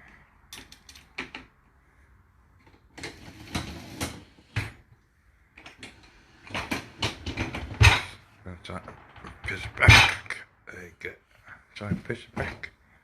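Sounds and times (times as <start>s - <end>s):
dishes and racks clattering: 5.6s - 8.2s.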